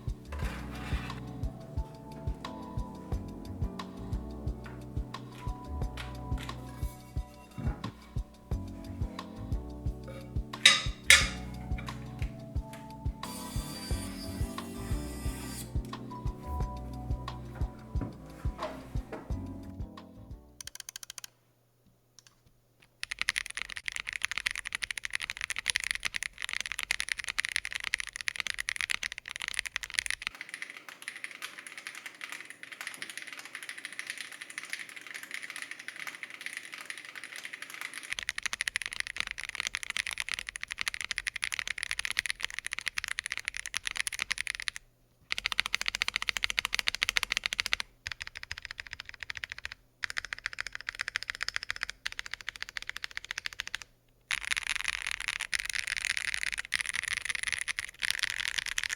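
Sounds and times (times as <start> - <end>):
fast typing on mechanical keyboard: 0.0 - 6.8, 20.6 - 21.3, 22.2 - 58.9.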